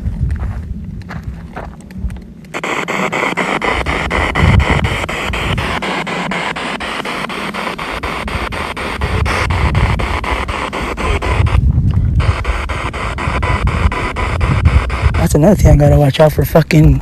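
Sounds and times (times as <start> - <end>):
radio static hiss: 2.5 - 11.6, 12.2 - 17.0
fast even clicks: 2.5 - 16.0.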